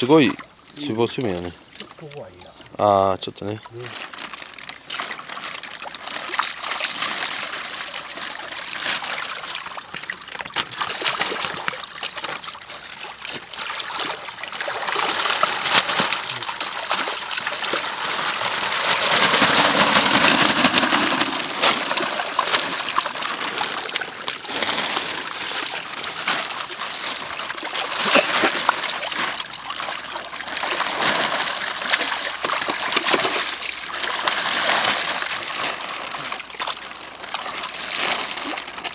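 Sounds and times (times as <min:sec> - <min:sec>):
fish splashing in shallow water: 0:03.4 - 0:38.9.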